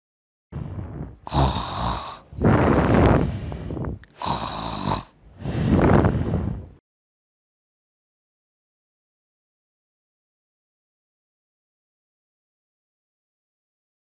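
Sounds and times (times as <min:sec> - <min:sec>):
person snoring loudly: 0:00.6 - 0:06.7.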